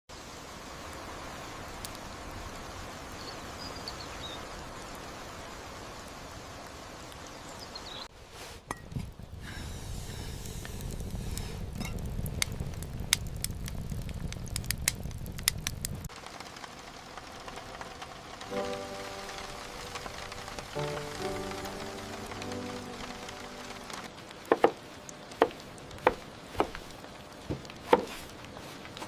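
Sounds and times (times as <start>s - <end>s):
steady rain hiss: 0.1s - 29.0s
sharp ticks and pops: 10.5s - 27.0s.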